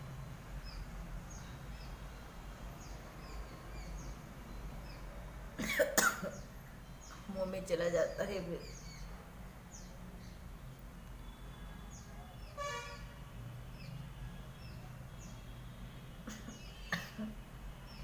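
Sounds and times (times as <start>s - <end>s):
small birds chirping: 0.1s - 18.0s
vehicle horn toot: 11.2s - 13.2s.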